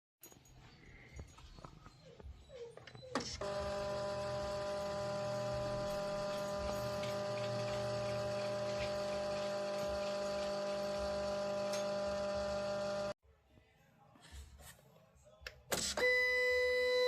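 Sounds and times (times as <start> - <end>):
motors whining: 3.2 - 13.2.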